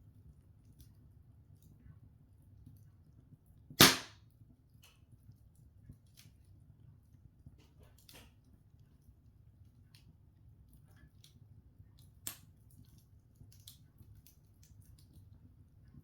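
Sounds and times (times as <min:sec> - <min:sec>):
log fire crackling: 0:00.0 - 0:16.0.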